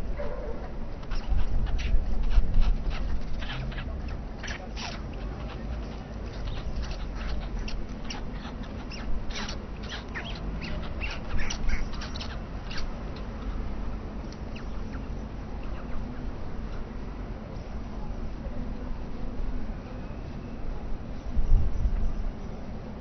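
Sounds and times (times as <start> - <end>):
stork harsh rasps: 1.1 - 13.3.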